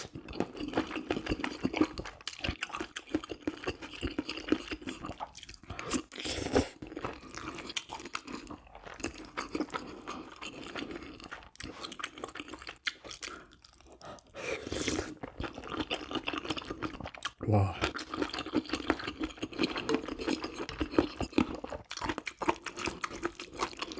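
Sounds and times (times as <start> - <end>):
person chewing and crunching food: 0.0 - 23.9
slurp: 5.8 - 6.9, 14.4 - 15.3.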